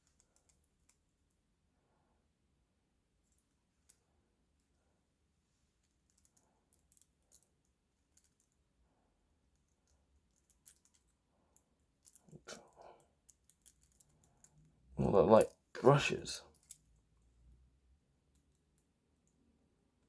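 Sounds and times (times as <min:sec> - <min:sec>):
small plastic parts clicking: 0:10.3 - 0:11.1, 0:13.3 - 0:14.6.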